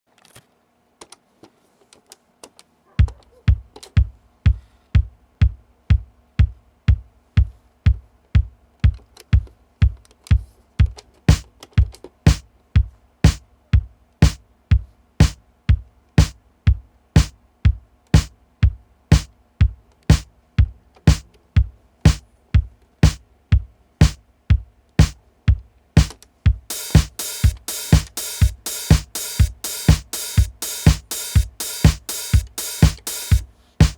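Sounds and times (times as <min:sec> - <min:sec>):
drum machine beat: 0:03.0 - 0:33.9
bright hi-hat: 0:11.3 - 0:11.5, 0:15.2 - 0:15.4, 0:26.0 - 0:33.9.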